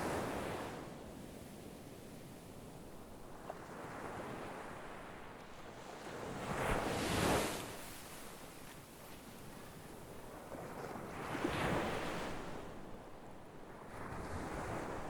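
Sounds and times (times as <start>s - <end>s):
sea waves breaking on shore: 3.3s - 12.8s.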